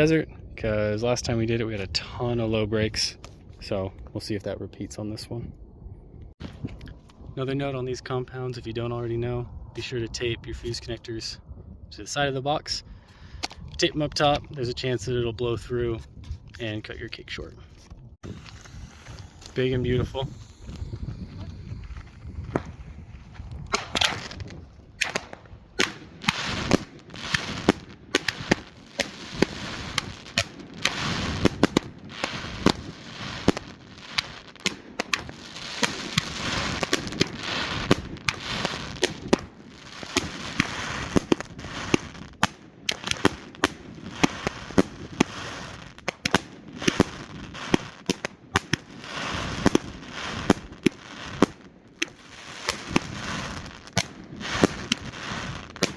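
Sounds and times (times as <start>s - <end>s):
firework aerial bangs: 23.6s - 55.9s.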